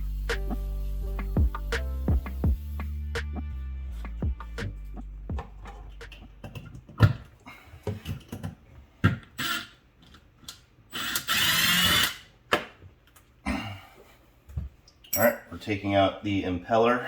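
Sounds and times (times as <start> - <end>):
plastic parts knocking and clicking: 5.3 - 10.6
cordless drill whirring: 11.0 - 12.3.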